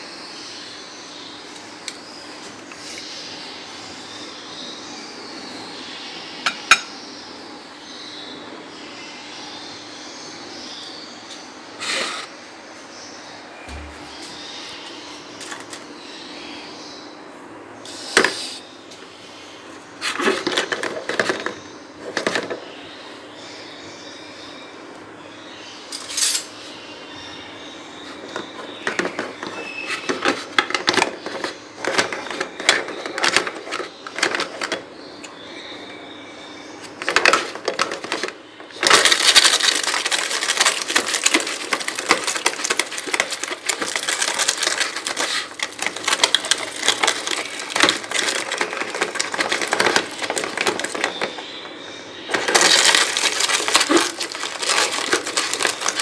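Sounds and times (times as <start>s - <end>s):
dry bird food crunching: 36.9s - 56.0s.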